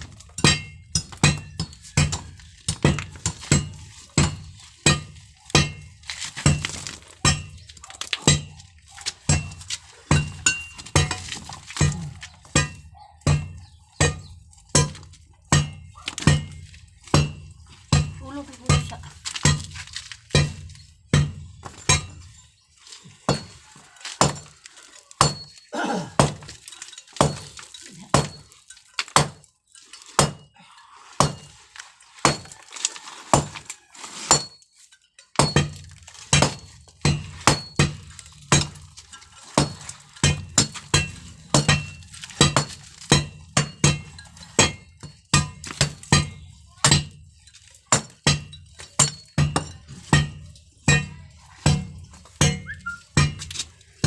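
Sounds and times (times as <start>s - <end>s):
hammer blows on concrete: 9.3s - 22.4s, 48.0s - 53.7s.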